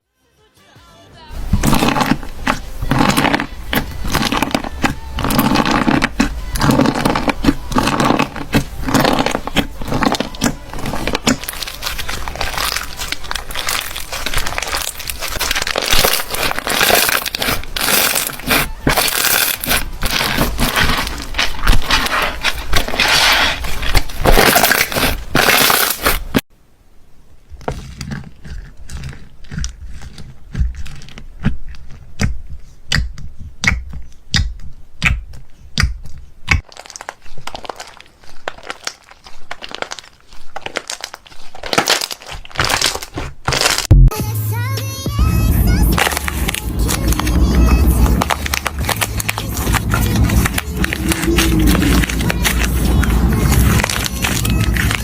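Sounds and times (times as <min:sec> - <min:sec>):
slime squished by hand: 0:01.4 - 0:26.4, 0:27.5 - 0:43.9, 0:45.6 - 0:55.0.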